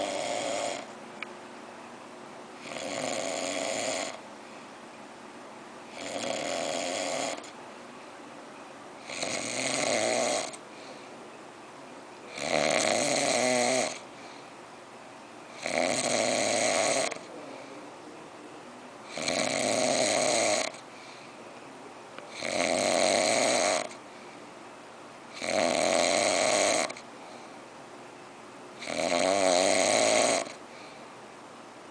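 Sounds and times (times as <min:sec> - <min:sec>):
person snoring loudly: 0:00.0 - 0:00.9, 0:02.6 - 0:04.2, 0:05.9 - 0:07.5, 0:09.0 - 0:10.6, 0:12.3 - 0:14.0, 0:15.6 - 0:17.7, 0:19.1 - 0:20.8, 0:22.3 - 0:24.0, 0:25.4 - 0:27.0, 0:28.8 - 0:30.6.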